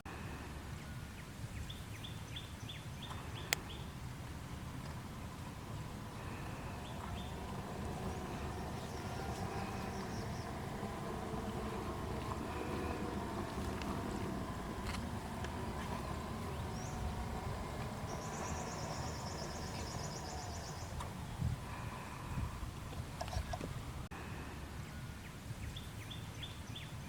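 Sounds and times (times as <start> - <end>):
small birds chirping: 0.8 - 24.1
low rumble: 3.6 - 23.0.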